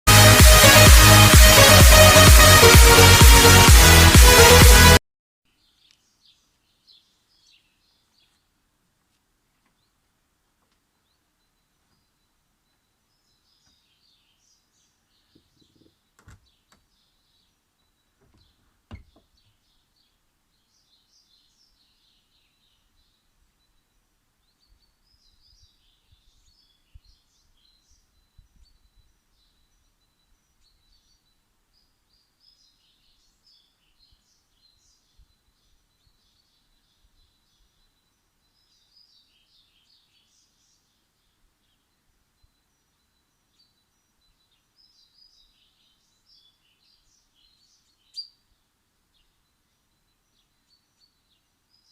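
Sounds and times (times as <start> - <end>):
small birds chirping: 5.5 - 51.9
soft knocks: 18.2 - 19.3.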